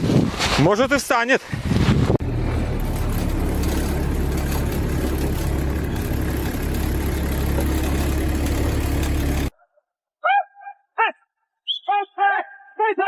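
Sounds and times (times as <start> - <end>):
engine idling: 2.2 - 9.5.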